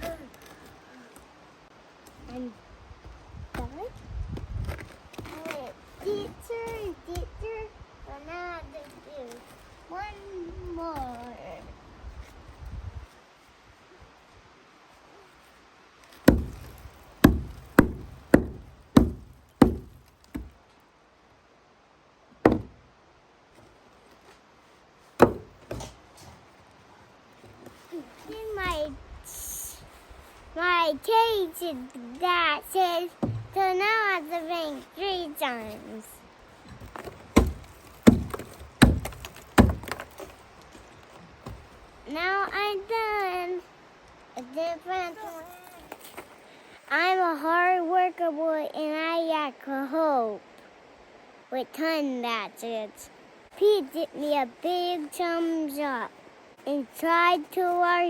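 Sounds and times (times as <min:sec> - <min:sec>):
ice pick chipping ice: 0:16.2 - 0:20.5, 0:36.8 - 0:40.4
light knocks: 0:16.3 - 0:20.6, 0:22.5 - 0:22.8, 0:25.2 - 0:26.3, 0:33.2 - 0:33.6.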